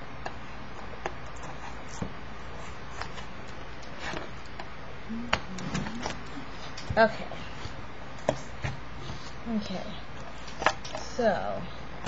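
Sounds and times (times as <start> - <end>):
steady background hiss: 0.0 - 12.0.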